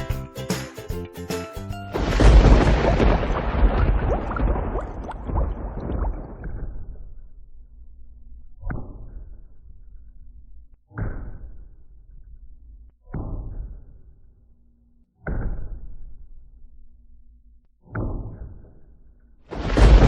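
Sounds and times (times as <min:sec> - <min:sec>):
heavy impacts with rumble: 0:02.0 - 0:06.8, 0:19.5 - 0:20.0.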